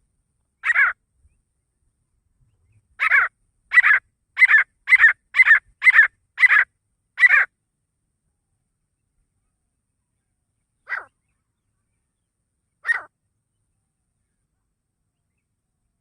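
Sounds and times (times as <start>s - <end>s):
francolin calling: 0.6s - 1.0s, 3.0s - 7.5s, 10.8s - 12.0s, 12.7s - 13.2s.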